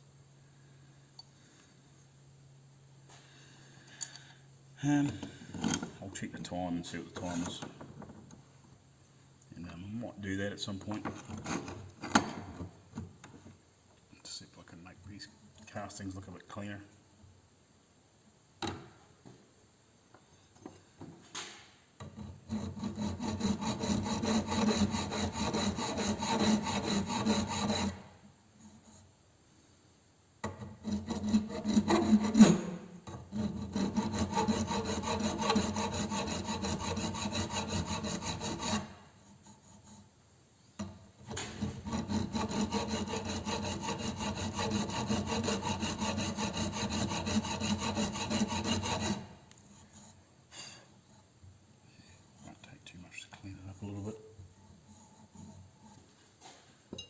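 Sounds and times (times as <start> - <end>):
hand file rasping on metal: 22.0 - 29.0, 30.5 - 40.1, 41.2 - 50.2, 54.5 - 56.1.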